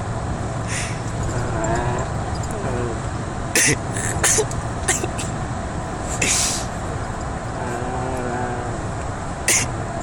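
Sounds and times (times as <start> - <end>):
car rumbling on road: 0.0 - 10.0
dog sneezing: 6.1 - 6.7, 9.5 - 9.7.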